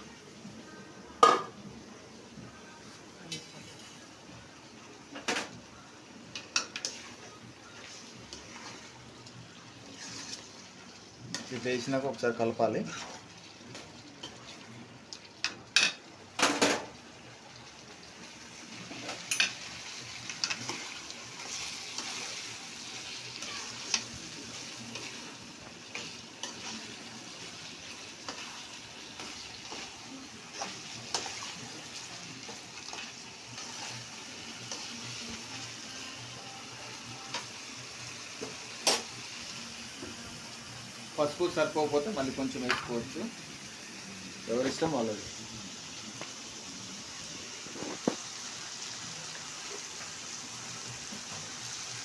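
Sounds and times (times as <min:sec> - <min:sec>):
frying sizzle: 0:00.0 - 0:52.0
spoon scraping pan: 0:09.9 - 0:10.6, 0:12.8 - 0:14.5, 0:20.3 - 0:35.3.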